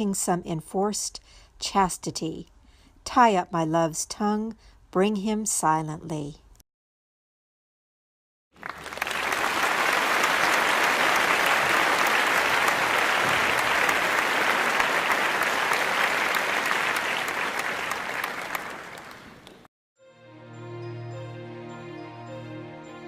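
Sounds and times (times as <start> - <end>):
audience applauding: 8.6 - 19.7.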